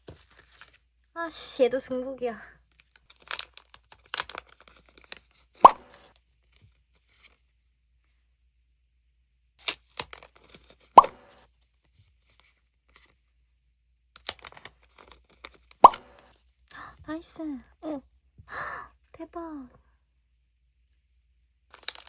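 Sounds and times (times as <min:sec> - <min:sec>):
packaging tearing and rustling: 0:02.8 - 0:06.1, 0:21.7 - 0:22.0.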